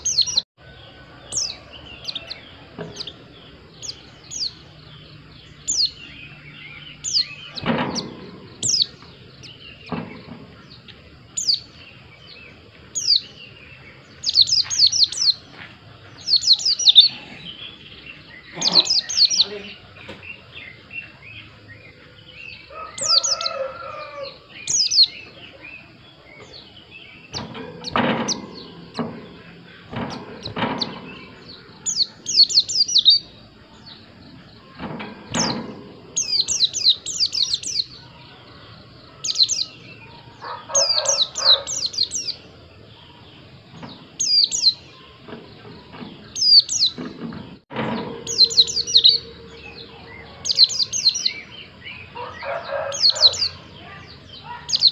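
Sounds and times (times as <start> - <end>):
bird chirping very high: 0.0 - 0.5, 1.2 - 10.0, 16.2 - 21.5, 22.5 - 25.6, 29.9 - 33.4, 35.4 - 38.2, 39.3 - 42.4, 47.8 - 54.9.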